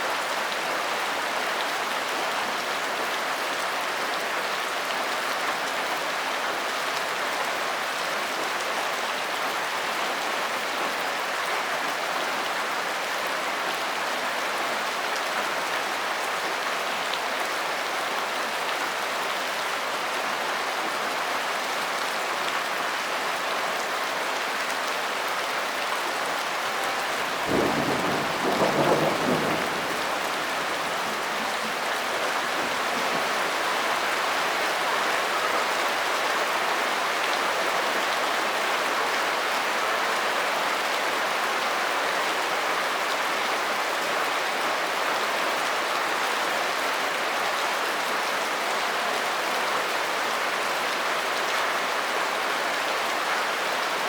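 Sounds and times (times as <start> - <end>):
steady rain: 0.0 - 54.0
low rumble of thunder: 27.2 - 32.3.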